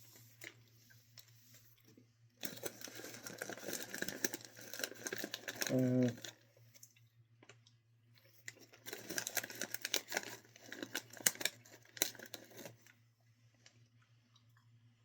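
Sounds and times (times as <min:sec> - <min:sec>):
plastic snack bag crinkling: 0:00.0 - 0:06.5, 0:08.2 - 0:13.0.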